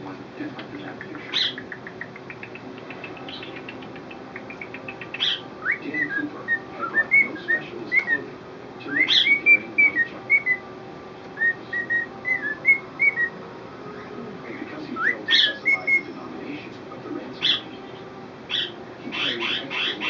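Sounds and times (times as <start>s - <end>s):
cockatiel whistling: 1.2s - 8.2s, 8.9s - 10.6s, 11.4s - 14.1s, 15.0s - 16.1s.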